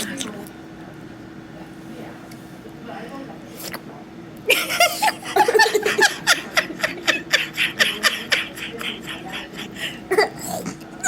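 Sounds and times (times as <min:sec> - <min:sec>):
person laughing: 0:04.5 - 0:10.6.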